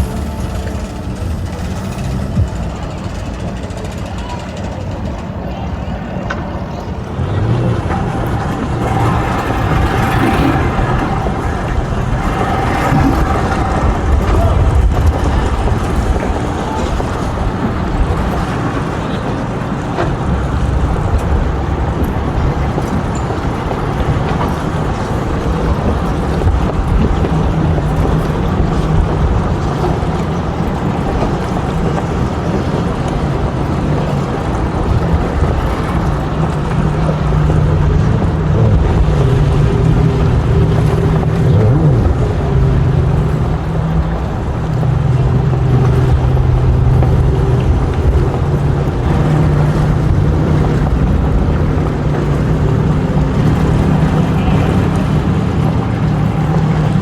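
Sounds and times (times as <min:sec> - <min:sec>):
engine running: 0:00.0 - 0:57.0
loud low rumbling: 0:00.0 - 0:57.0.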